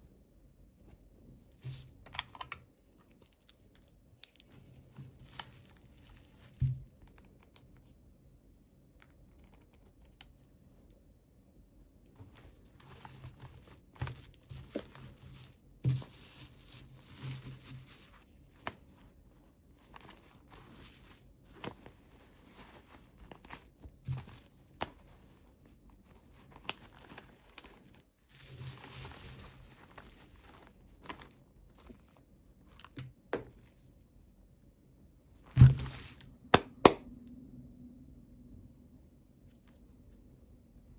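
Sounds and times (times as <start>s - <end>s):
packaging crinkling and tearing: 26.0s - 33.7s.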